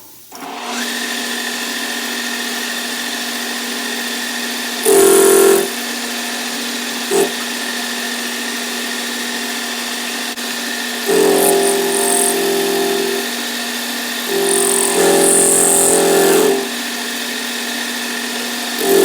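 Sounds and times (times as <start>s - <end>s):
metal lathe cutting whine: 0.4s - 19.0s
high screech: 11.1s - 13.3s, 14.2s - 16.8s.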